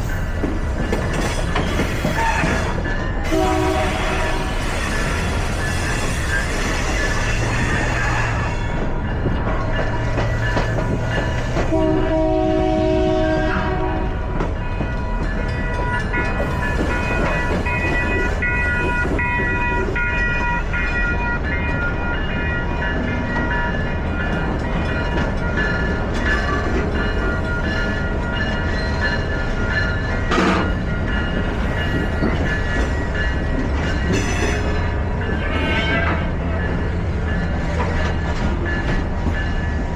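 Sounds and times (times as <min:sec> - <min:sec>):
train rumbling on rails: 0:00.0 - 0:39.9
train horn: 0:01.9 - 0:06.2, 0:11.6 - 0:14.4, 0:35.5 - 0:36.4.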